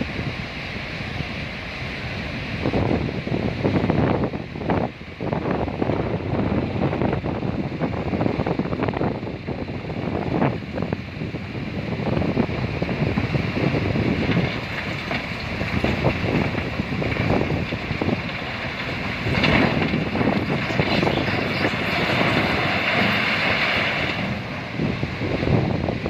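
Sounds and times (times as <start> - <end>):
wind buffeting microphone: 0.0 - 26.0
heavy machinery running: 9.6 - 26.0
clatter of rock: 14.2 - 24.5.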